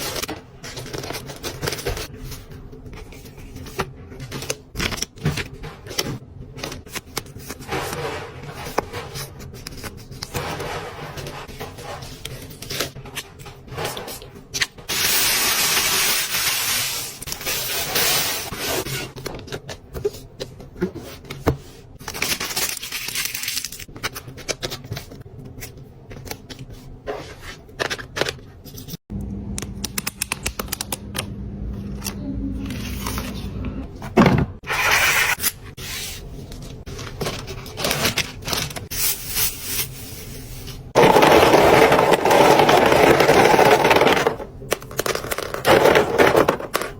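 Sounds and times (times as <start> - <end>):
packaging rubbing and crinkling: 36.4 - 46.9.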